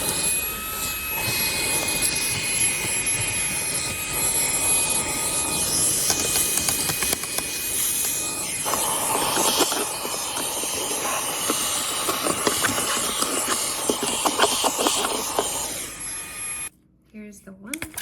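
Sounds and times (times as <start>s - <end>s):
handheld vacuum hissing: 0.0s - 16.7s.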